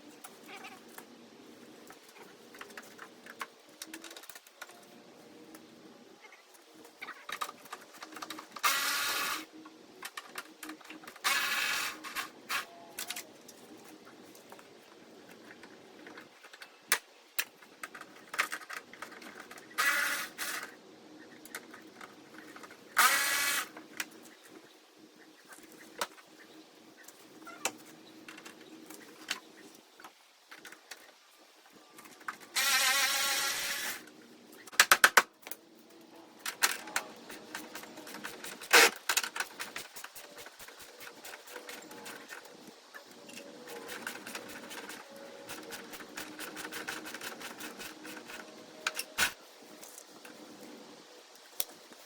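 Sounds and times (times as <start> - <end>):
small power tool bursts: 8.6 - 9.4, 23.0 - 23.7, 32.6 - 34.0.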